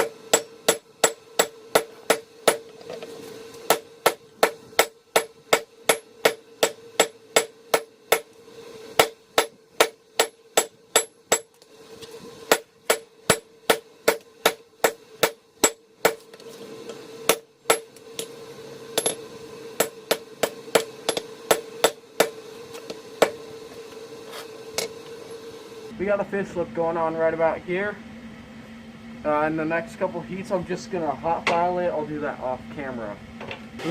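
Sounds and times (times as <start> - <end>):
hammer ringing on anvil: 0.0 - 2.6
continuous low hum: 0.0 - 33.9.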